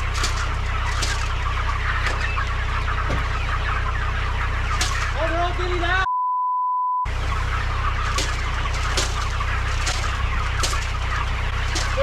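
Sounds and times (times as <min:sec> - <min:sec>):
steady low hum: 0:00.0 - 0:06.0, 0:07.1 - 0:12.0
chickens clucking: 0:00.0 - 0:06.1, 0:07.1 - 0:12.0
censor bleep tone: 0:06.0 - 0:07.1.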